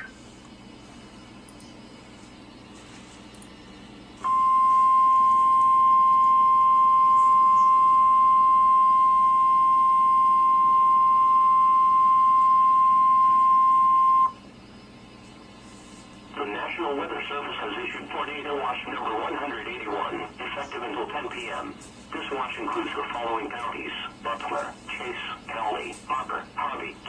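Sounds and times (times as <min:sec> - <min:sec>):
faint radio hiss: 0:00.0 - 0:04.4, 0:14.6 - 0:27.0
loud steady alarm beep: 0:04.2 - 0:14.4.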